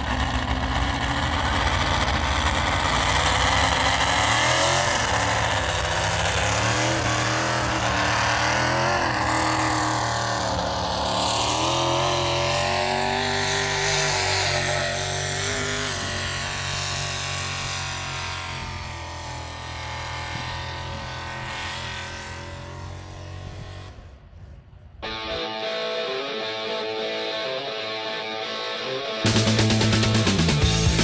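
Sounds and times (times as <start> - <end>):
engine running hard under load: 0.0 - 24.7.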